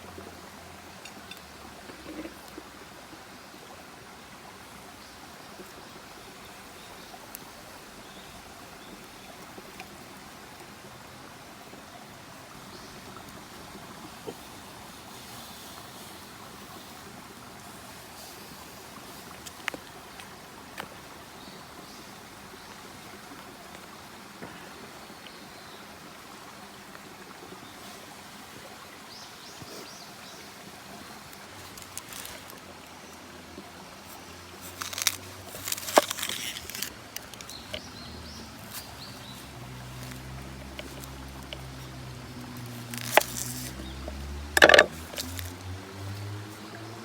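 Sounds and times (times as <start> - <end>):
steady rushing hiss: 0.0 - 47.0
sharp clicks and knocks: 42.9 - 45.6.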